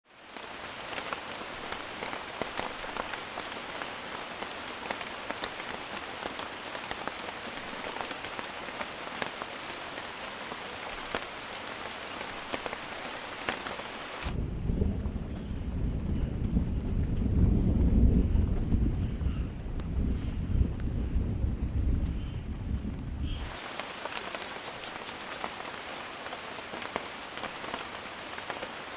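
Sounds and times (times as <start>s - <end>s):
rain hissing on leaves: 0.0s - 28.9s
deep thunder rumble: 14.2s - 23.4s.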